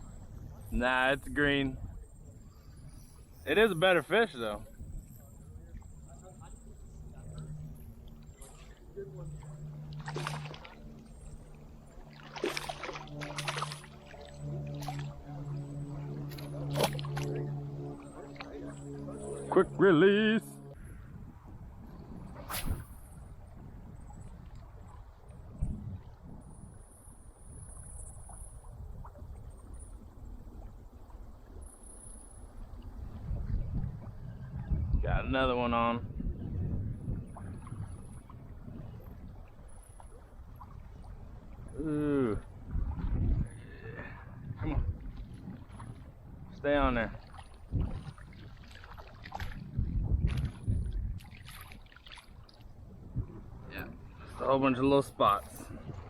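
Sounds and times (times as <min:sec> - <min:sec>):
water moving around kayak: 0:00.0 - 0:35.0, 0:36.1 - 0:56.0
wind buffeting microphone: 0:20.7 - 0:26.8, 0:32.6 - 0:56.0.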